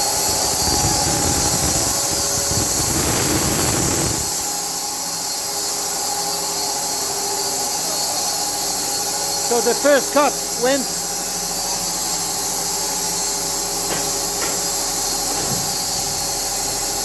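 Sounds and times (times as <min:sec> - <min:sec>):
band saw whining: 0:09.3 - 0:17.0.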